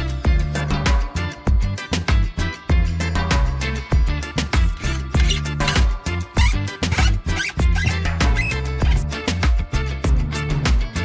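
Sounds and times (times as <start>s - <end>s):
music with bass and drums: 0.0s - 11.0s.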